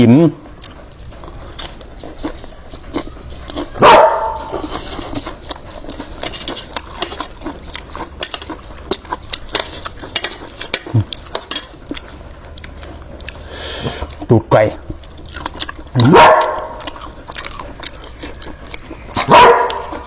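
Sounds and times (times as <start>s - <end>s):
dog barking: 3.8s - 4.6s, 16.0s - 16.9s, 19.2s - 20.0s
dishes and utensils clattering: 8.1s - 11.9s.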